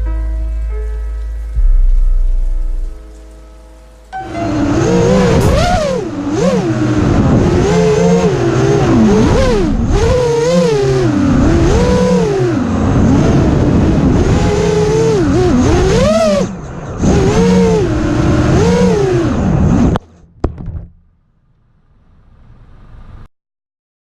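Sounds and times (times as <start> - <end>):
quadcopter motors whining: 4.4 - 19.9.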